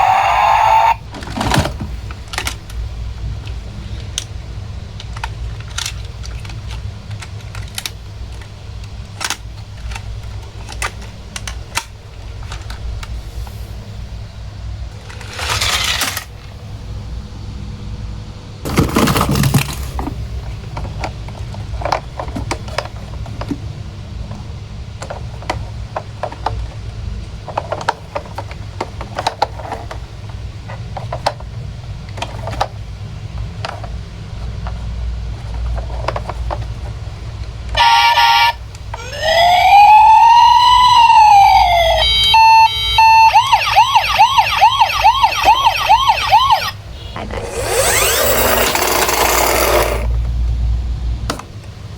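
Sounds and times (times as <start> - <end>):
toy vehicles clicking and clinking: 3.4 - 13.2, 15.0 - 16.4, 18.7 - 20.2, 37.8 - 50.3.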